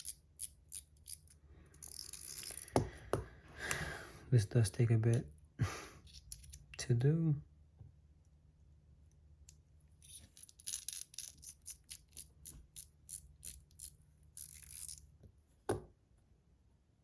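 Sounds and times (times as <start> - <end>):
small metal parts clicking: 0.0 - 2.8, 10.0 - 15.0.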